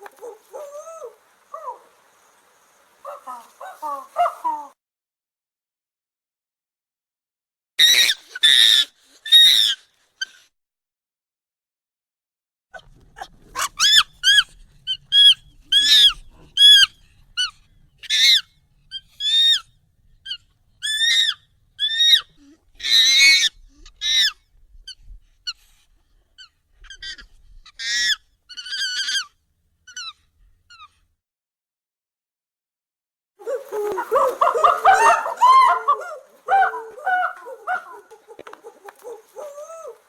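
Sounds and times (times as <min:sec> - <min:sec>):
high-pitched monkey calls: 0:00.0 - 0:02.0, 0:03.0 - 0:04.8, 0:07.8 - 0:10.4, 0:13.6 - 0:25.0, 0:26.4 - 0:31.0, 0:33.4 - 0:40.0.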